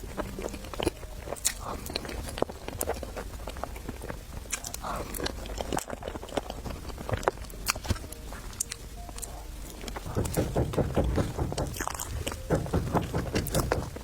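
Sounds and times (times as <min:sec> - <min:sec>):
food crunches: 0:00.0 - 0:10.4
chewing and biting: 0:00.0 - 0:14.0.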